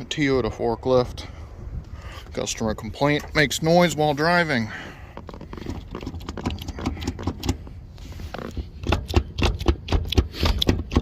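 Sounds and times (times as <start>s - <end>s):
clicking and knocking rattles: 5.2s - 7.7s, 8.4s - 11.0s.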